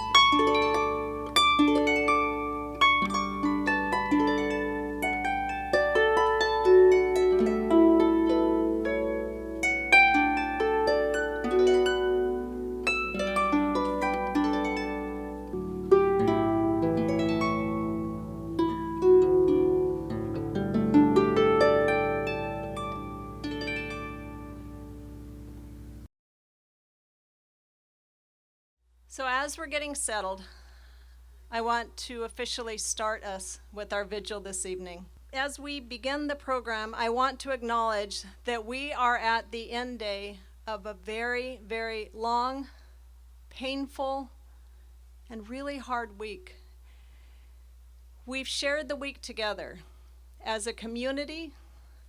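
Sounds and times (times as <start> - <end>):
plucked string instrument music: 0.0 - 26.1.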